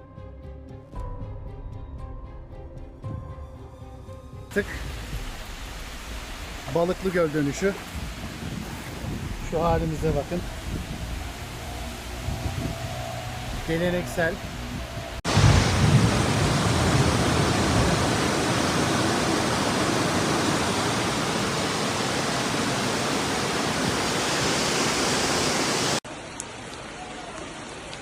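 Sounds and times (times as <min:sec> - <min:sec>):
water rushing: 0:04.5 - 0:28.0.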